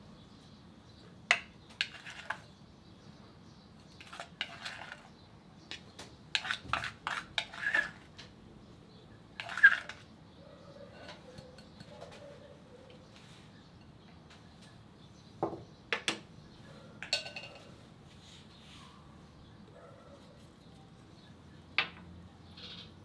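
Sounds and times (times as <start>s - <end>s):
utensils clinking against mixing bowl: 3.9s - 5.1s, 5.7s - 8.1s, 9.4s - 10.1s, 10.9s - 12.3s, 17.0s - 17.8s.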